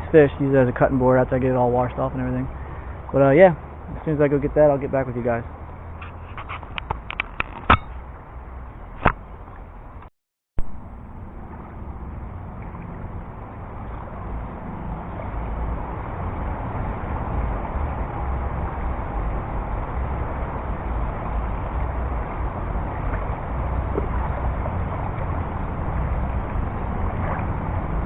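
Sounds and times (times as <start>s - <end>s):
low rumble: 5.5s - 28.0s
fast-flowing river water: 11.5s - 28.0s.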